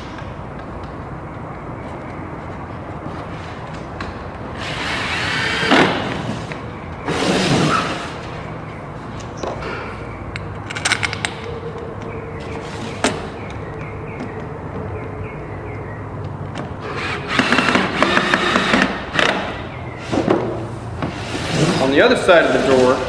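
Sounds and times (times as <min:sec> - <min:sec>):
sharp metal clicks: 0:10.3 - 0:12.2.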